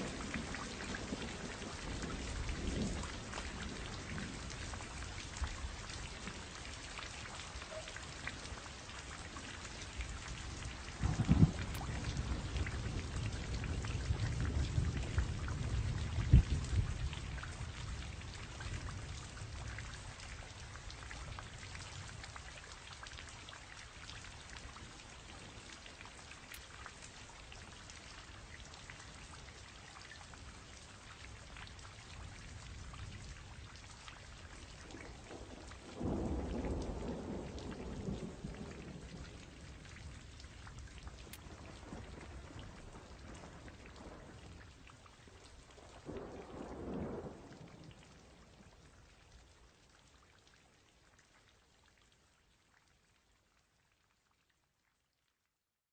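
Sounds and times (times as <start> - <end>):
thunder rolling and clapping: 0.0 - 6.5, 10.3 - 20.2, 34.9 - 44.8, 46.0 - 48.0
steady rain: 0.0 - 55.1.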